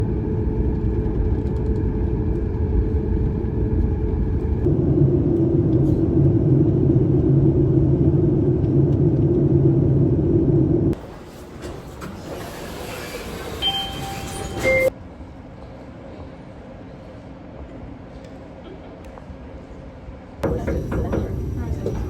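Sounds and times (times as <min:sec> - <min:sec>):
vehicle interior rumble: 0:00.0 - 0:11.0
constant hum: 0:00.0 - 0:12.1, 0:14.6 - 0:22.0.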